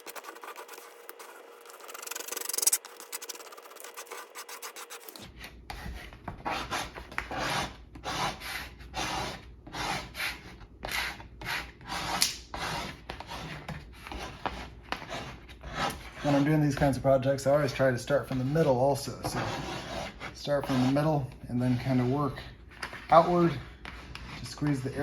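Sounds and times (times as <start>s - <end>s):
squeegee scraping on glass: 0.0s - 7.7s.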